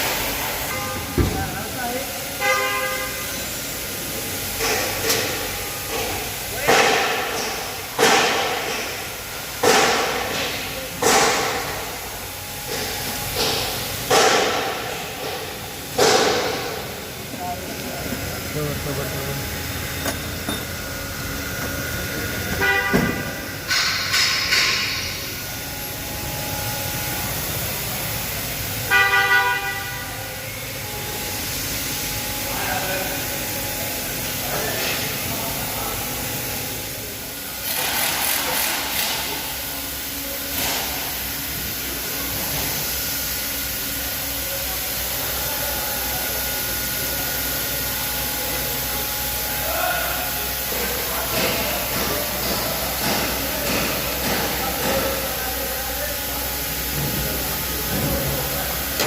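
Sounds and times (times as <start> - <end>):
car horn toot: 0.6 - 1.4, 2.4 - 3.4, 22.6 - 23.4, 28.8 - 30.4.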